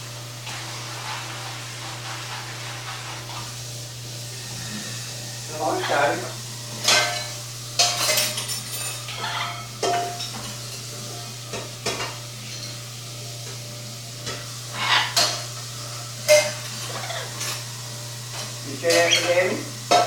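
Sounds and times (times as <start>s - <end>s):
parrots making harsh noises: 14.7s - 15.3s, 16.8s - 17.6s.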